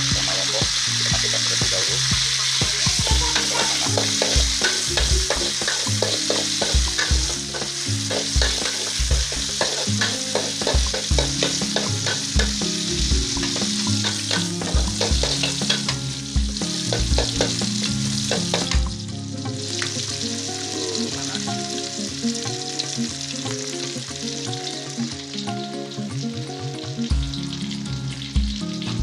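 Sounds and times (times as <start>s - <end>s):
food sizzling in hot oil: 0.0s - 29.0s
spatula scraping a pan: 3.3s - 16.0s.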